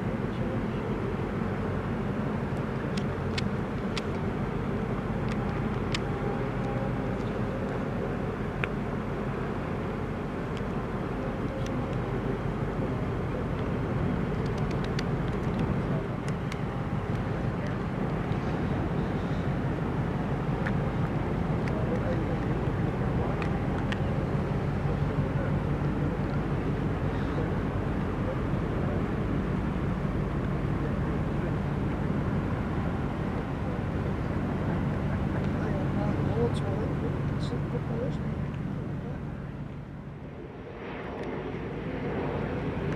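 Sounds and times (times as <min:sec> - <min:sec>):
ship engines rumbling: 0:00.0 - 0:40.8
faint clicks: 0:13.5 - 0:18.4.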